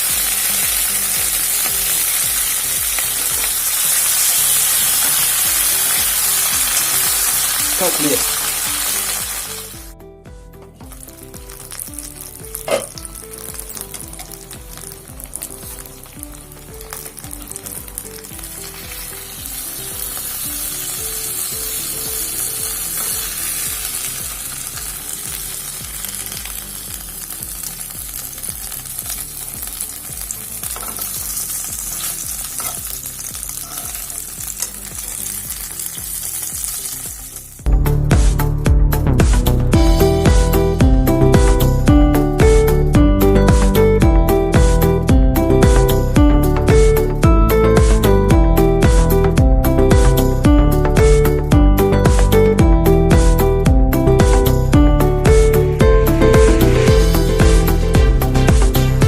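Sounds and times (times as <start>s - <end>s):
fish frying in oil: 0.0s - 9.9s, 10.9s - 37.7s
background music: 0.0s - 59.0s.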